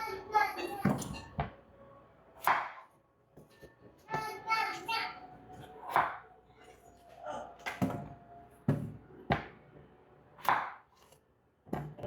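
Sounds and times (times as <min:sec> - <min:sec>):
knife chopping on cutting board: 0:10.4 - 0:10.8.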